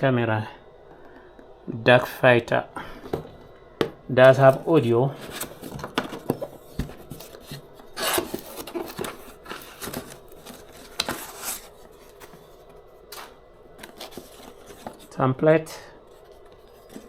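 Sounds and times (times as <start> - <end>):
packaging rubbing and rustling: 4.2 - 15.2, 16.0 - 17.0.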